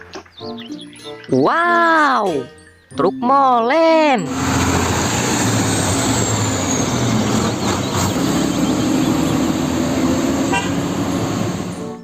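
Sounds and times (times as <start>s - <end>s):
truck engine running: 4.3s - 12.0s.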